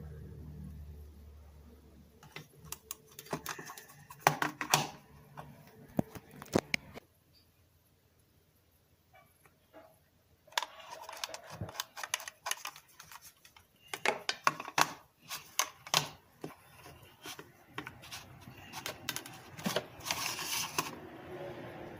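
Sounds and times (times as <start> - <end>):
packaging rustling: 10.5 - 21.0.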